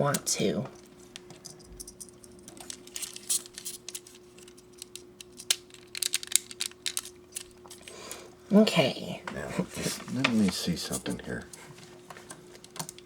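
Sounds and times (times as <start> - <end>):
faint steady hum: 0.0 - 13.0
plastic parts clicking and tapping: 1.2 - 7.8, 12.1 - 13.0.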